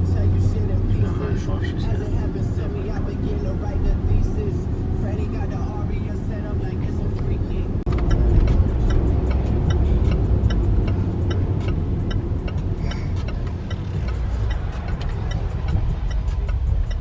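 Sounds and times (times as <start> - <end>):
road and engine rumble in car: 0.0 - 17.0
light regular ticking: 7.2 - 17.0.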